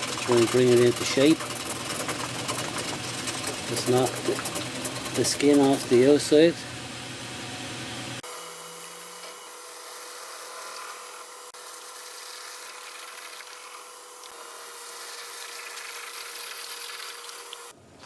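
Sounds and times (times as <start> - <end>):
gouge scraping spinning turnip: 0.0 - 6.3, 9.7 - 17.7
lathe humming: 0.0 - 17.8.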